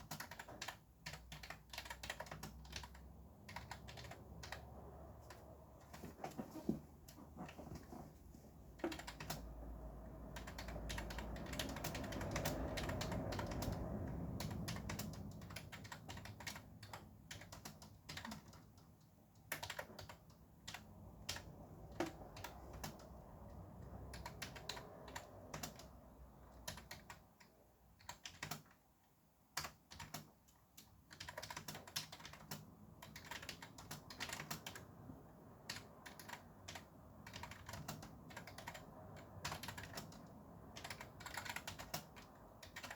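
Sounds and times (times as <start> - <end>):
fast typing on keyboard: 0.0 - 6.4, 8.8 - 28.8, 29.6 - 42.9
background traffic rumble: 0.0 - 28.0, 31.3 - 42.9.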